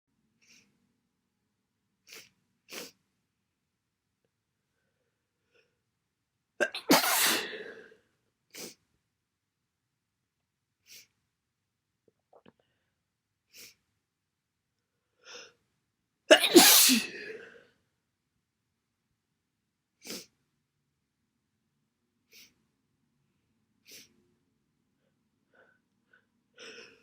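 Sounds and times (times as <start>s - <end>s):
person sneezing: 6.6s - 7.8s, 16.3s - 17.5s.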